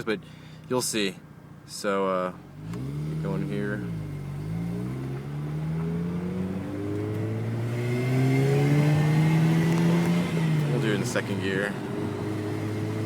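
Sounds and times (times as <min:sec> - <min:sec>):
rotary engine accelerating: 0:02.6 - 0:13.0.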